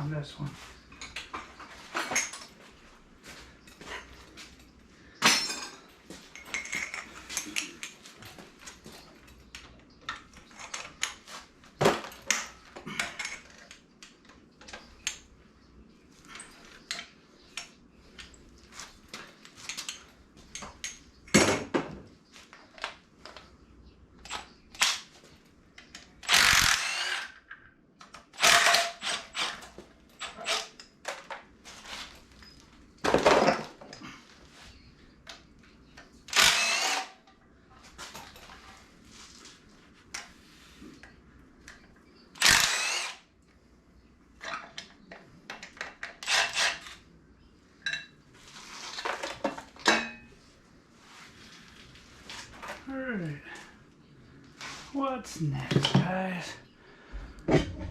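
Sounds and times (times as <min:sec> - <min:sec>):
ratchet and wrenches clinking: 0:26.2 - 0:27.6.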